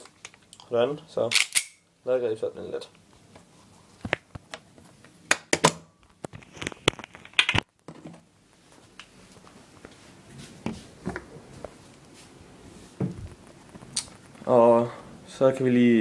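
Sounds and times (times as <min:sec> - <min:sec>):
pistol handling clicks and knocks: 0:01.3 - 0:01.8.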